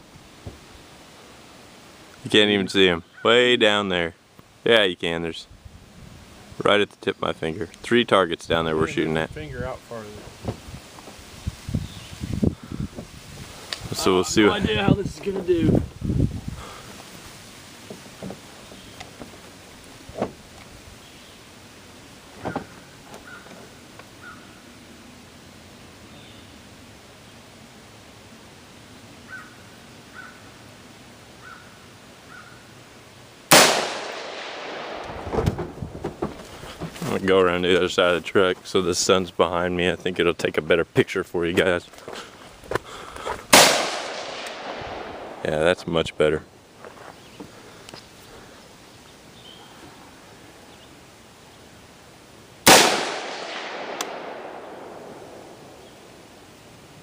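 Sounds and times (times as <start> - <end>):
bird calling: 2.9 - 3.5, 22.4 - 24.8, 29.2 - 30.6, 31.4 - 32.7, 46.9 - 51.7
rifle shot: 33.5 - 35.8, 43.5 - 45.5, 52.6 - 55.8
sharp short tick: 54.0 - 54.2.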